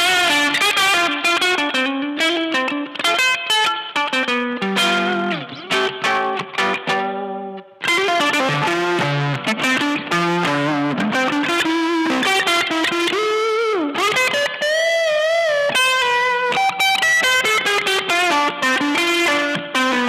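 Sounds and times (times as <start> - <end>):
overdriven electric guitar lead: 0.0 - 20.0.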